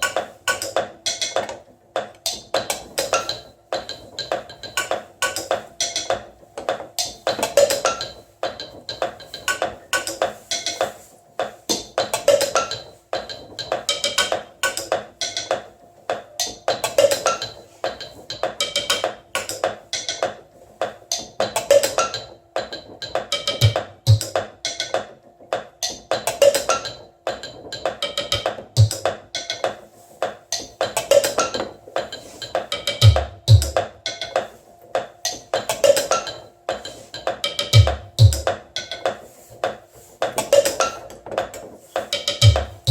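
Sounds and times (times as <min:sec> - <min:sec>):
percussion loop of knocks and clicks: 0:00.0 - 0:42.9.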